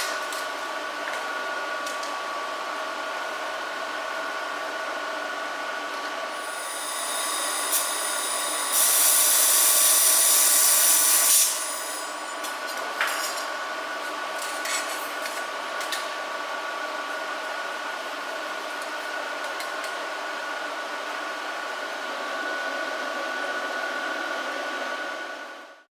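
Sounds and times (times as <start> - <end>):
laser welder hissing: 6.4 - 12.1.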